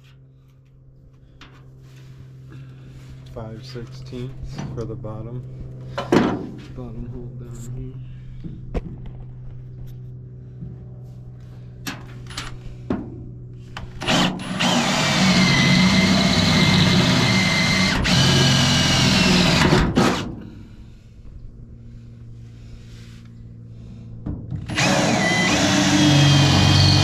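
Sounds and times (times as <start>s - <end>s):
power drill boring through metal: 14.0s - 20.3s, 24.6s - 27.0s.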